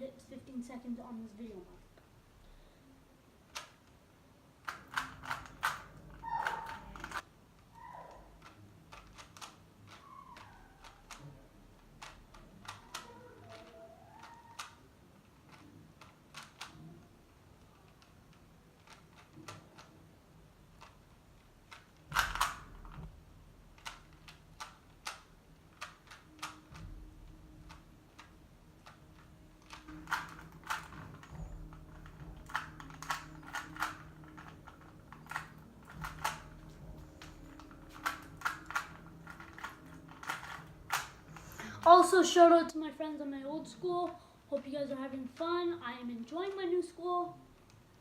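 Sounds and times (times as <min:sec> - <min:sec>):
puzzle cube clacking: 0:03.4 - 0:23.1, 0:23.7 - 0:42.5.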